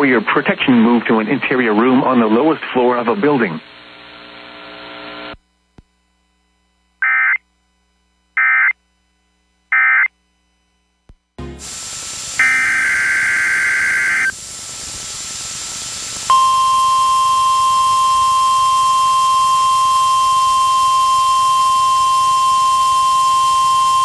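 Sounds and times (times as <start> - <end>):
static hiss: 0.0 - 18.1
steady alarm tone: 12.4 - 14.3, 16.3 - 24.0.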